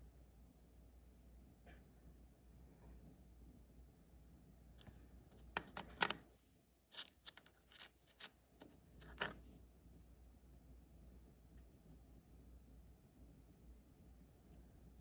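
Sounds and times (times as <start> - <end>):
metal lock parts clicking: 5.6 - 6.3, 6.9 - 9.6.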